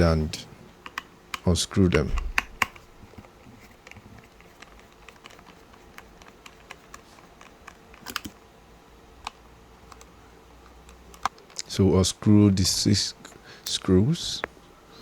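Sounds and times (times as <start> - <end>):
screwdriver clicking and tapping: 0.8 - 1.5, 2.2 - 2.8.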